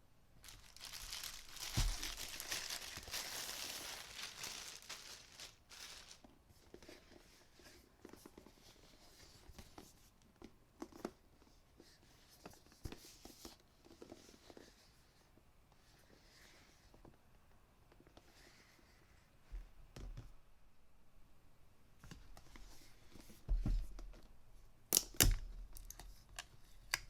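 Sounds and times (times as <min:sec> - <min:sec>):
packaging tearing and crinkling: 0:00.4 - 0:06.2.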